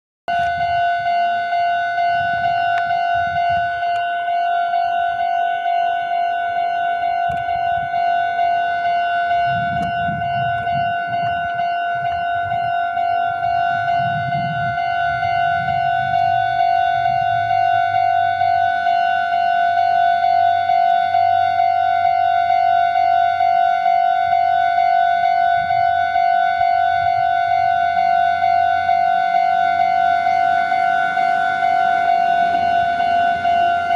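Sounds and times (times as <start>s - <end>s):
level crossing warning bell: 0.3s - 33.9s
low rumble: 7.0s - 22.5s.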